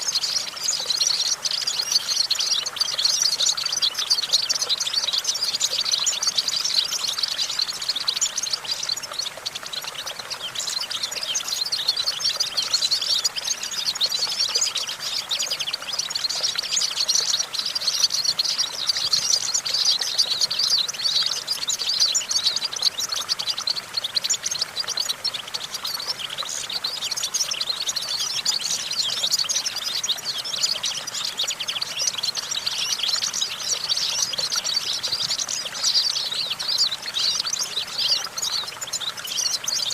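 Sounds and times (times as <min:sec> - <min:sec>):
bird twittering song: 0:00.0 - 0:39.9.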